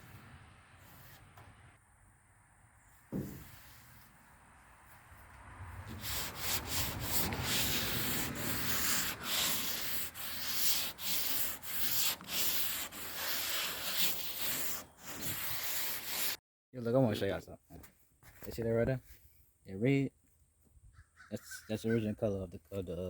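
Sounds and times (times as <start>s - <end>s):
sandpaper scratching paint: 5.9s - 16.4s.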